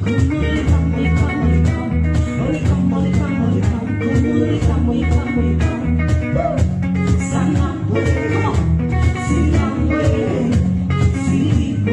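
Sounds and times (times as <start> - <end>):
bass guitar: 0.0 - 11.9
drum kit beat: 0.0 - 11.9
guitar: 0.0 - 11.9
person singing: 0.0 - 11.9.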